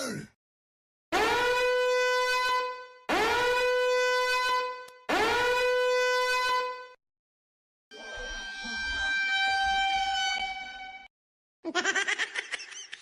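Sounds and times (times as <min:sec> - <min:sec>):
brassy horn blasts: 0:01.1 - 0:07.0.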